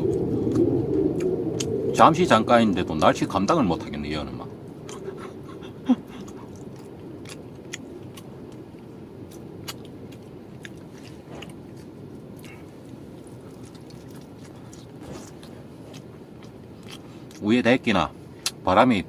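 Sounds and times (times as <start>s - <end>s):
person chewing food: 0.0s - 1.7s, 4.9s - 17.4s
low background rush: 0.0s - 19.0s.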